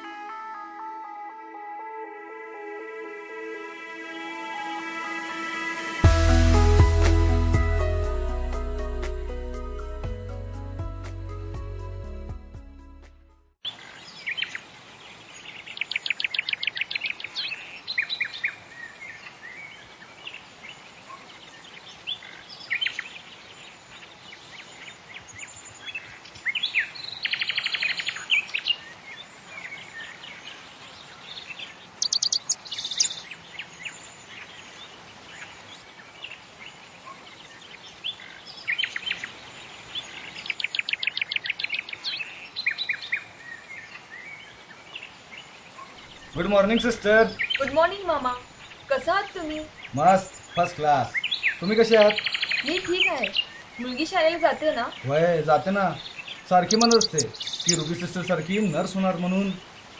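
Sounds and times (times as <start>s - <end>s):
steady background hiss: 13.8s - 59.9s
birds chirping and singing: 31.4s - 35.2s, 37.0s - 59.8s
rapid bird trill: 32.0s - 33.4s, 56.2s - 58.2s.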